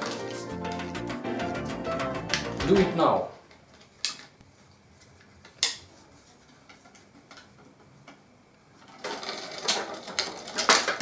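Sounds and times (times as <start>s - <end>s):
toy helicopter rattling clatter: 8.9s - 11.0s.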